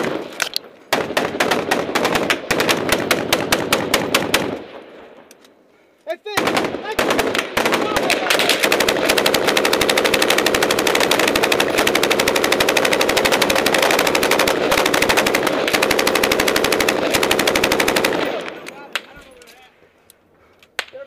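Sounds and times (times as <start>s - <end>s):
machine gun firing bursts: 0.9s - 4.6s, 6.4s - 19.1s.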